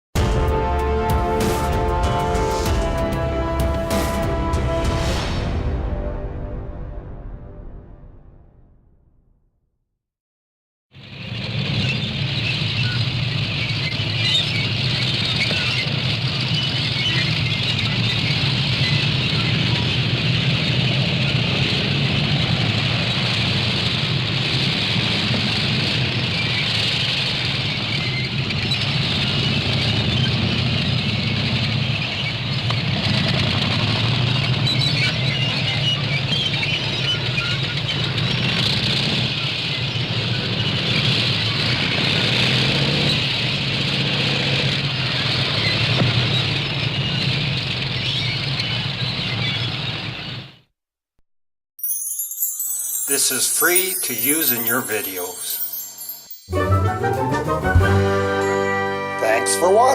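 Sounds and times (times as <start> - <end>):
tank engine rumble: 11.0 - 50.6
constant higher hiss: 51.9 - 57.4.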